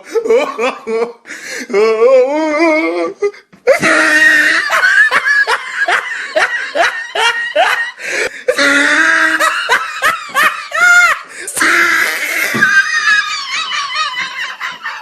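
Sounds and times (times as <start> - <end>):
person laughing: 0.0 - 1.9, 2.6 - 15.0
person shrieking: 1.7 - 4.8, 10.7 - 15.0.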